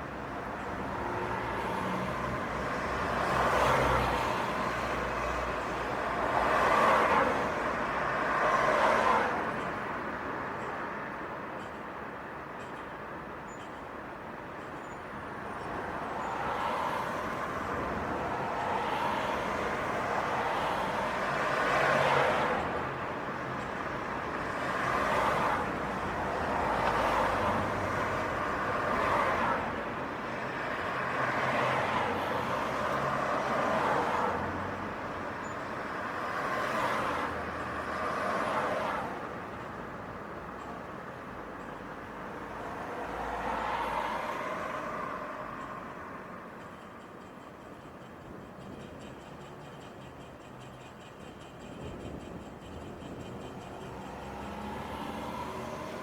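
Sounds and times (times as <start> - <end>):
cars passing: 0.0 - 9.6, 15.7 - 46.6, 51.8 - 56.0.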